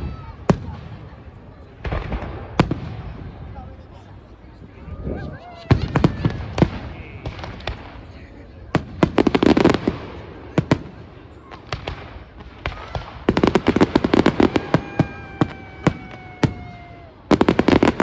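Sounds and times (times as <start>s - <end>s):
firework bangs: 0.0s - 4.0s, 4.6s - 18.0s
rapid crackling firework volleys: 0.0s - 18.0s
firework whistle: 14.1s - 18.0s.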